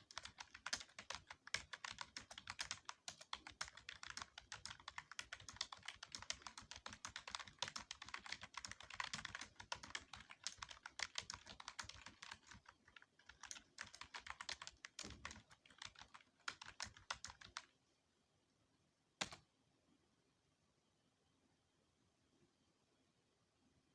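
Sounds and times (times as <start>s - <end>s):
fast typing on computer keyboard: 0.0s - 17.7s.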